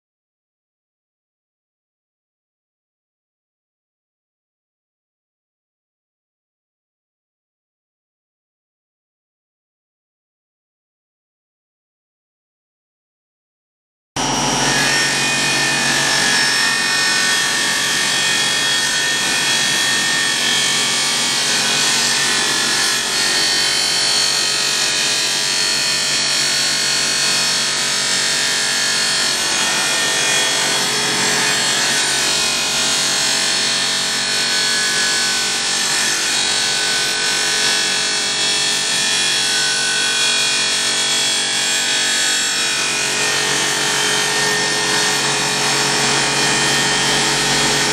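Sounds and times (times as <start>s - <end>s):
power sander grinding metal: 14.2s - 47.9s.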